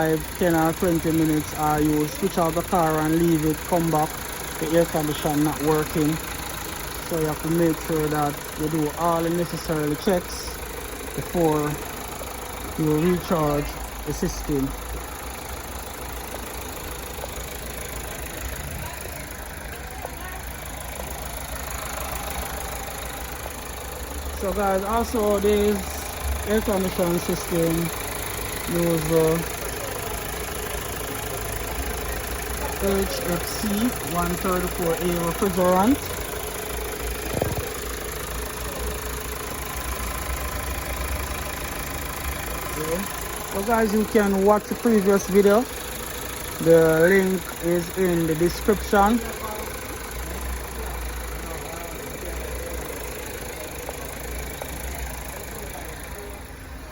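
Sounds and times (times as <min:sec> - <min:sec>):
car engine idling: 0:00.0 - 0:56.9.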